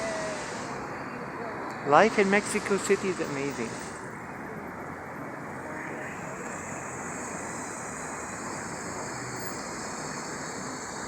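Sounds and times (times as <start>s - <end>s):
water rushing down waterfall: 0.0s - 0.9s.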